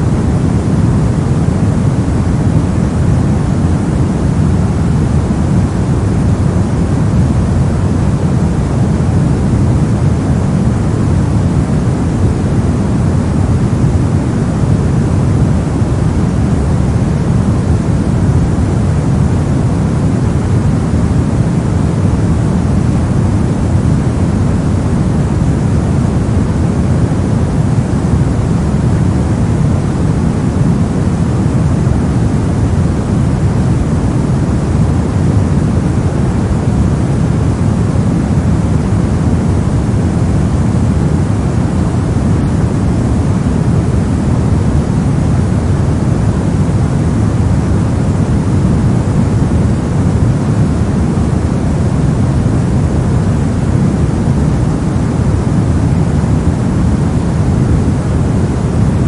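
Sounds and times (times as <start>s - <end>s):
steady low hiss noise: 0.0s - 59.0s.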